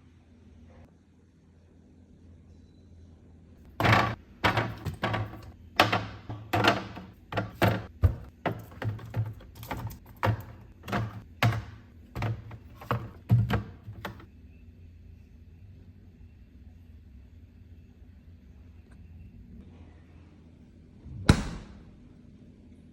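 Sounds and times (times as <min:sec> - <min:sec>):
containers clunking on fridge shelves: 0:03.6 - 0:14.3.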